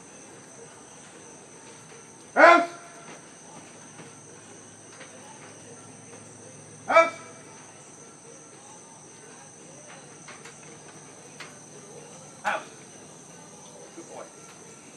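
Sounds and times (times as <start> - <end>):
crickets chirping: 0.0 - 14.9
dog barking: 2.4 - 2.9, 6.9 - 7.4, 12.4 - 12.8
faint clicks: 9.9 - 11.6.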